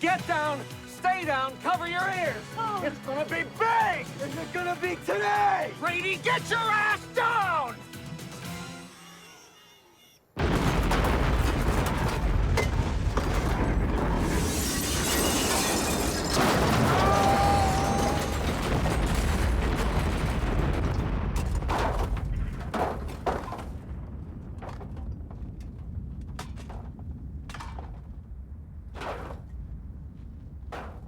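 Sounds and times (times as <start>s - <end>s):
huge explosion: 10.4s - 30.7s
debris crashing and shattering: 10.4s - 31.0s
falling pieces knocking: 10.6s - 28.2s.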